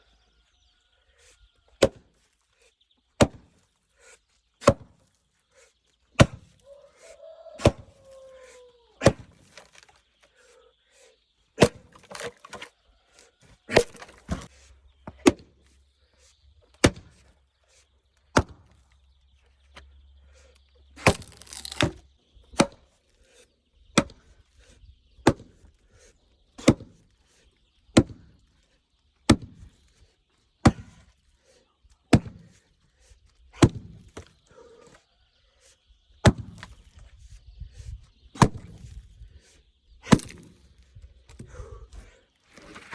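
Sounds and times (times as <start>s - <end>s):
axe chopping logs: 1.7s - 2.2s, 3.2s - 3.6s, 4.6s - 5.0s, 6.2s - 6.6s, 7.5s - 8.0s, 9.0s - 10.0s, 11.6s - 12.7s, 13.6s - 15.6s, 16.7s - 17.3s, 18.3s - 18.8s, 21.0s - 22.9s, 23.9s - 24.3s, 25.2s - 25.7s, 26.6s - 27.1s, 27.9s - 28.4s, 29.3s - 29.7s, 30.6s - 31.1s, 32.1s - 32.6s, 33.5s - 34.4s, 36.2s - 36.9s, 38.4s - 38.9s, 40.0s - 41.8s
wood creaking: 9.0s - 10.0s, 11.9s - 12.7s, 21.0s - 22.0s
wood splitting crackle: 9.0s - 10.0s, 11.6s - 12.7s, 21.0s - 22.0s, 40.1s - 40.6s.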